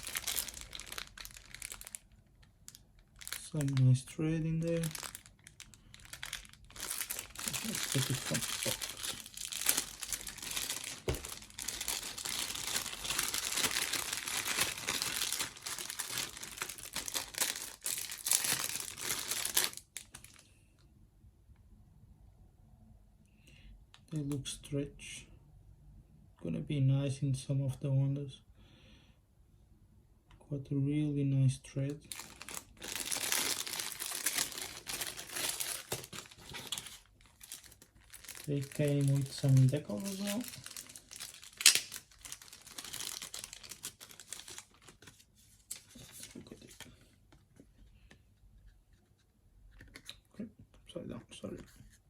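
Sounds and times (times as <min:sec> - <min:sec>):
packaging crinkling and rustling: 0:00.0 - 0:20.5, 0:31.9 - 0:48.2.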